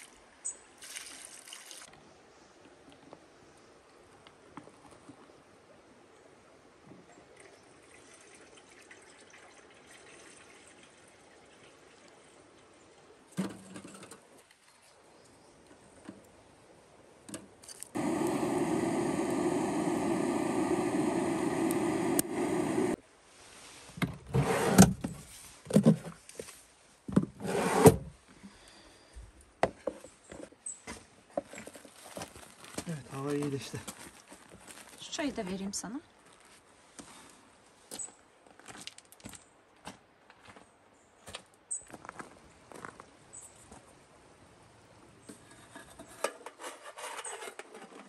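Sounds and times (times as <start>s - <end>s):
water running into a container: 7.8s - 11.1s.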